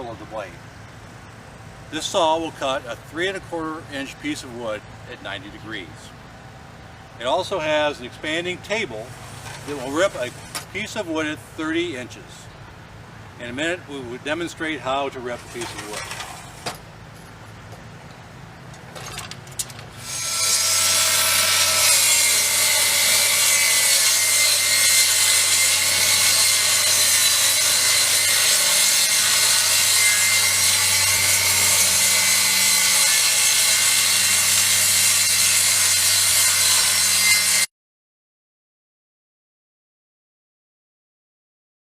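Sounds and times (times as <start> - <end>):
table saw ripping a board: 20.0 - 37.7.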